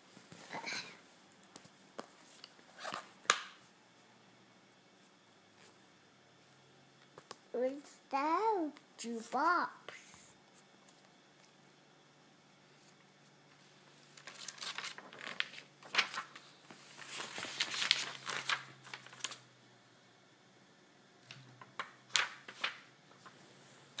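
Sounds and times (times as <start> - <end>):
crinkling rustling handling noise: 13.2 - 19.5.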